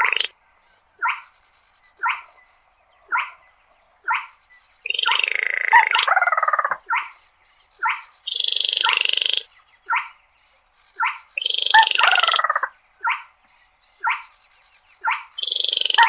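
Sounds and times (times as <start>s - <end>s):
bird dry rattling trill: 7.8s - 9.5s.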